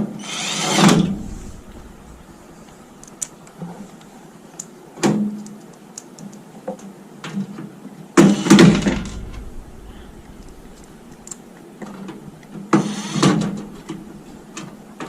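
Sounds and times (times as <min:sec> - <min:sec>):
loud burst of noise: 0:00.5 - 0:04.5, 0:08.4 - 0:15.0.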